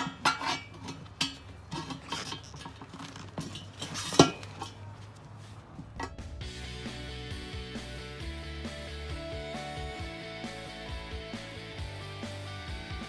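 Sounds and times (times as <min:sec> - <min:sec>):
tire irons clinking on wheel rim: 0:00.0 - 0:06.2
music: 0:06.0 - 0:13.0.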